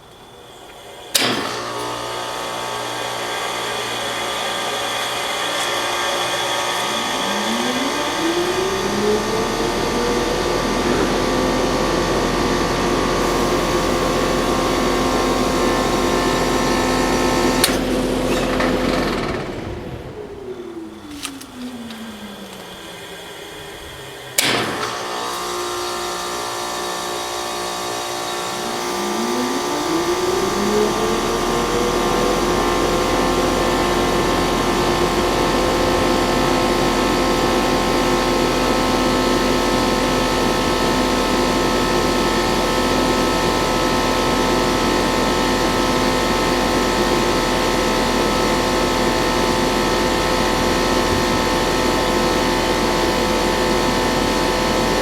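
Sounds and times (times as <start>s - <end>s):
fan spinning up: 0.0s - 55.0s
fan winding down: 0.0s - 55.0s
heat pump low hum: 0.0s - 55.0s
sharp click: 0.7s - 2.0s, 24.4s - 25.0s.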